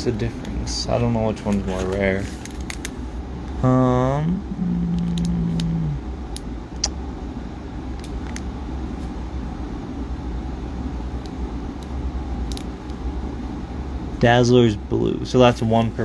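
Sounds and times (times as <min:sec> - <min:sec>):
low background hum: 0:00.0 - 0:16.0
trading cards being shuffled: 0:01.0 - 0:03.0.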